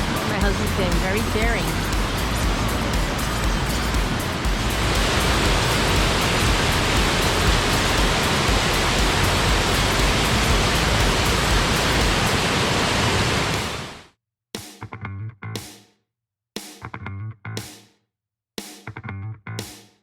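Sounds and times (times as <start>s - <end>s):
waterfall roaring: 0.0s - 14.0s.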